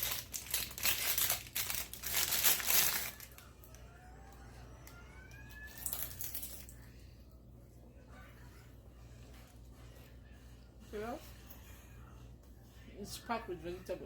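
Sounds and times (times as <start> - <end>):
packaging crinkling: 0.0 - 3.5, 5.7 - 6.7.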